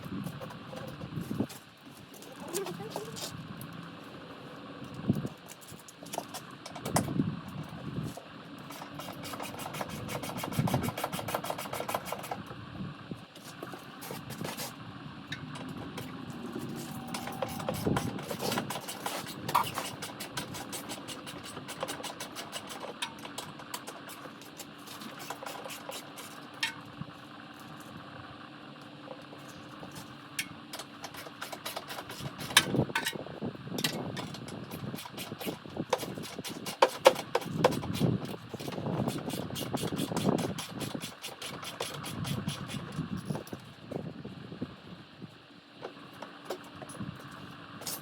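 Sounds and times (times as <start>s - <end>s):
rapid mechanical clicking of tool: 8.7s - 12.4s, 17.1s - 26.7s, 30.4s - 32.8s, 34.6s - 43.5s.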